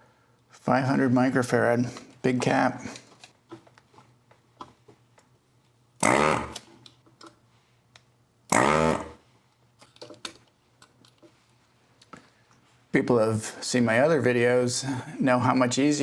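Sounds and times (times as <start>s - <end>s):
desoldering pump buzzing: 6.0s - 6.7s, 8.5s - 9.2s.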